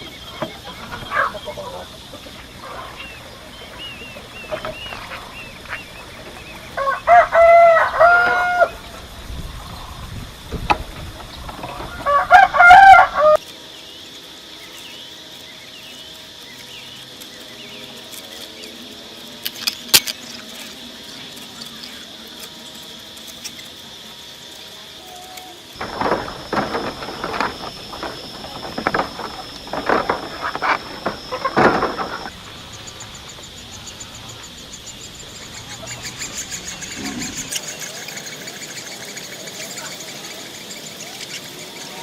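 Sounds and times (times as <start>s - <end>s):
rooster crowing: 6.7s - 9.0s, 11.9s - 13.4s.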